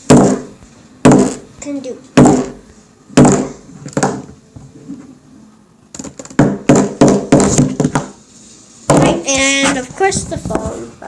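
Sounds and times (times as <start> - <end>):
cube piece knocking: 6.0 - 8.2.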